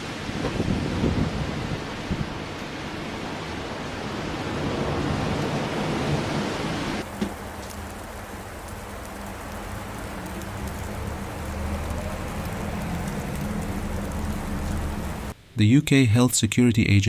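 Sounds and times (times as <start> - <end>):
outdoor rushing noise: 0.0 - 15.4
hiss: 7.0 - 15.4.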